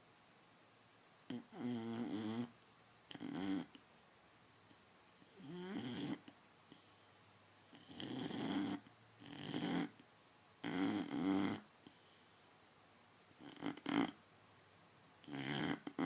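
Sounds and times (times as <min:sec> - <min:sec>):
dog snoring: 0:01.3 - 0:03.8, 0:05.2 - 0:06.4, 0:07.7 - 0:10.0, 0:10.6 - 0:11.7, 0:13.4 - 0:14.2, 0:15.2 - 0:16.0.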